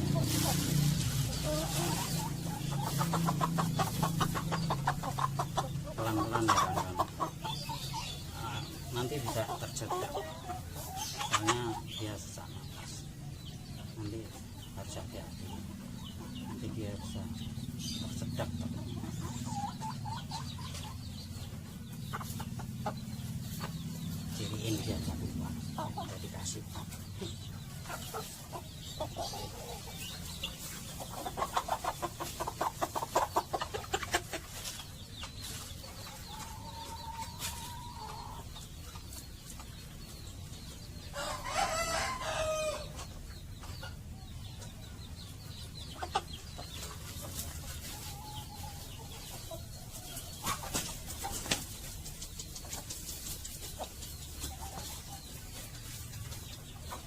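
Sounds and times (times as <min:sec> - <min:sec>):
chickens clucking: 0:00.0 - 0:57.0
rooster crowing: 0:41.2 - 0:42.9.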